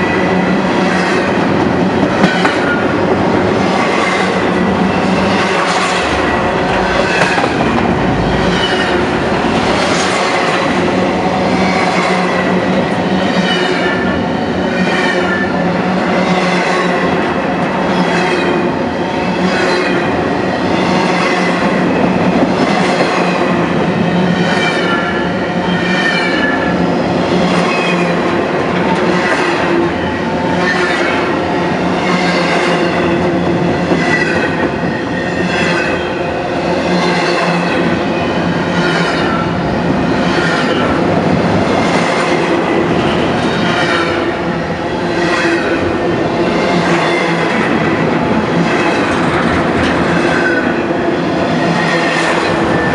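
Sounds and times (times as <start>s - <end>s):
train wheels rumbling and clattering: 0.0s - 52.9s
train wheels squealing: 24.1s - 26.8s, 33.9s - 36.2s, 37.0s - 39.6s.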